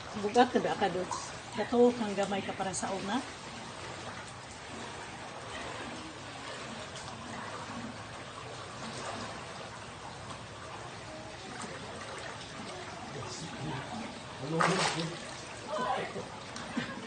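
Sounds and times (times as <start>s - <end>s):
rushing floodwater: 0.0s - 17.0s.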